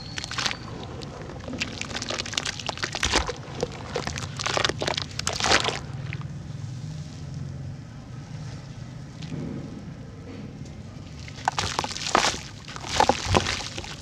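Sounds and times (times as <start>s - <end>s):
dirt crumbling in water: 0.0s - 6.2s, 11.1s - 14.0s.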